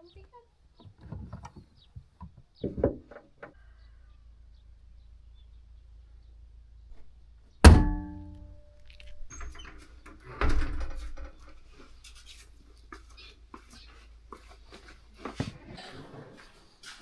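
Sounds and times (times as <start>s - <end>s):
thump: 7.6s - 8.6s
ringing knock: 7.7s - 8.7s.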